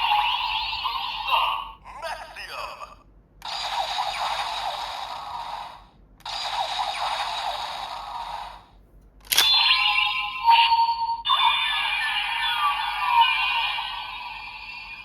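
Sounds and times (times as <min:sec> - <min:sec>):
toy click: 0:09.2 - 0:10.0
bright electronic tone: 0:09.4 - 0:15.0.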